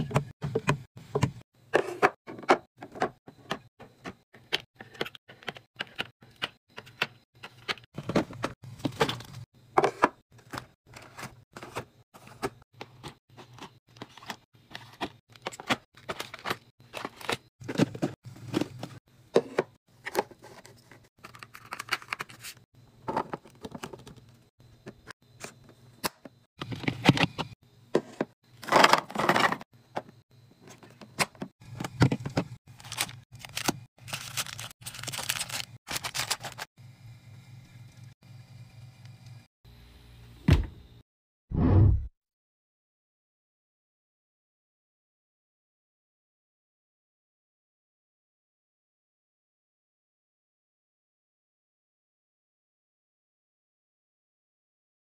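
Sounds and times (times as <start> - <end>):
food packaging clicking and crinkling: 10.4 - 19.0, 20.1 - 24.4, 30.8 - 36.7
packaging rustling: 32.7 - 36.7.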